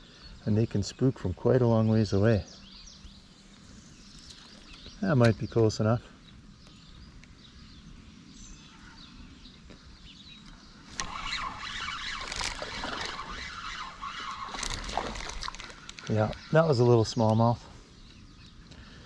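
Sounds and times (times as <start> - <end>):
creek: 10.8 - 17.8.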